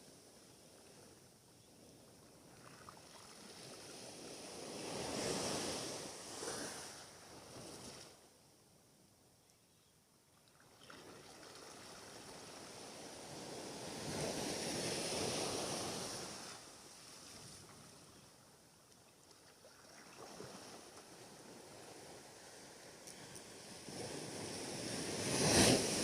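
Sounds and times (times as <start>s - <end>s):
waves washing onto shore: 2.6s - 8.2s, 10.9s - 18.1s, 19.6s - 26.0s.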